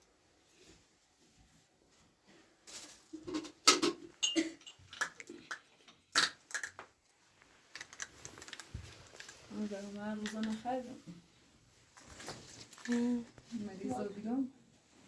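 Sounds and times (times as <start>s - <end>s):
knocks and clatters of objects: 2.6s - 7.0s.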